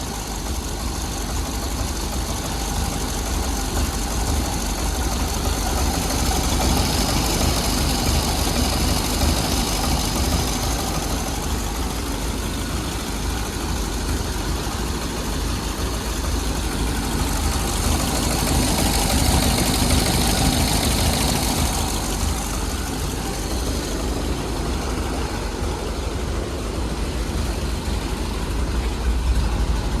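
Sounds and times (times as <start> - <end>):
car engine running: 0.0 - 30.0.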